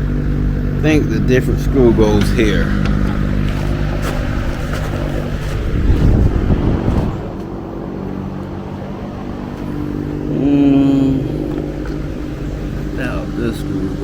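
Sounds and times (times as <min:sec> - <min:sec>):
steady motor hum: 0:00.0 - 0:14.0
rustling handling noise: 0:02.7 - 0:07.0.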